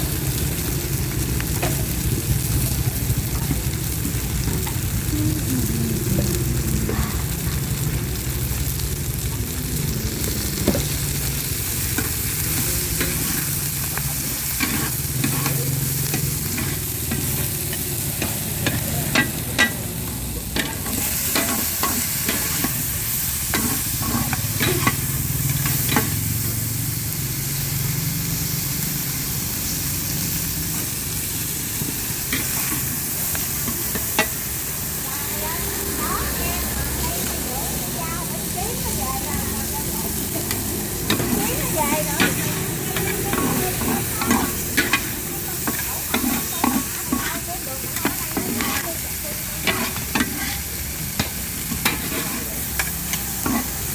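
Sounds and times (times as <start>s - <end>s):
meat sizzling in a hot pan: 0.0s - 53.9s
metal spatula scraping a pan: 10.4s - 26.2s, 40.2s - 53.9s.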